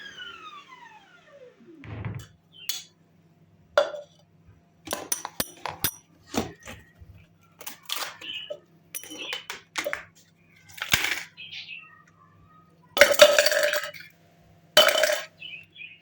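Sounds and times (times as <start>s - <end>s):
objects tapping and clinking: 4.9s - 6.1s, 7.6s - 10.1s, 10.7s - 11.3s, 13.0s - 14.1s, 14.8s - 15.3s.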